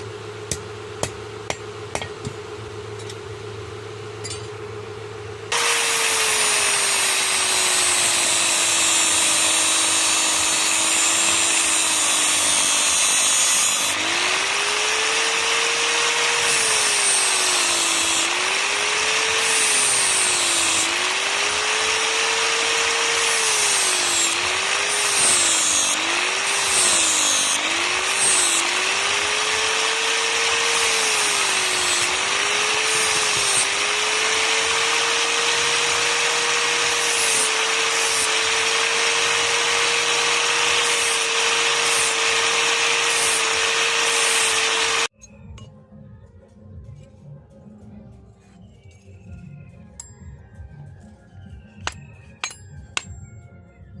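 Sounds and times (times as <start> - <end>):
electric grinder on steel: 5.5 - 45.2.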